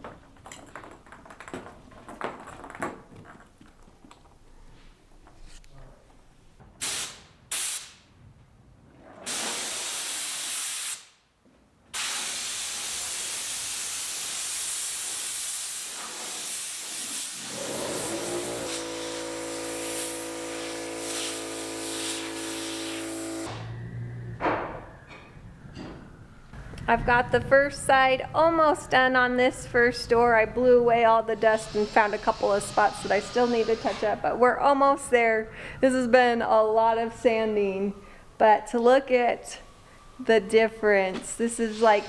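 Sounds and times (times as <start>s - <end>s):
air blow gun hissing: 12.0s - 23.6s, 31.3s - 34.3s, 41.6s - 42.0s
air compressor motor humming: 17.4s - 23.6s.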